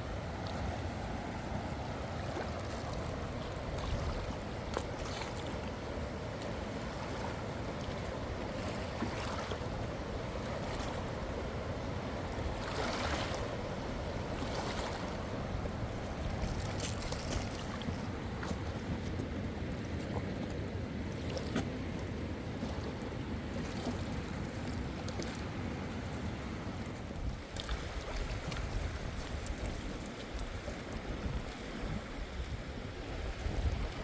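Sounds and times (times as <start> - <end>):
wash of water: 6.4 - 19.1
strong wind buffeting microphone: 27.1 - 34.0.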